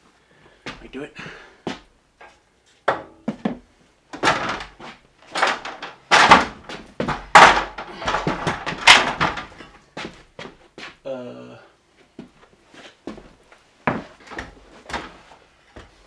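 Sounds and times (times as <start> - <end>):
heavy bangs and knocks: 4.2 - 9.8
scraping thumps: 4.2 - 10.2.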